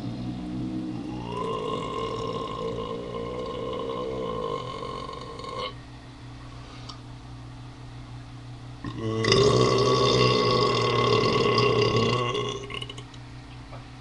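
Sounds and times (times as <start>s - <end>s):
man burping: 0.9s - 5.8s, 8.8s - 13.2s.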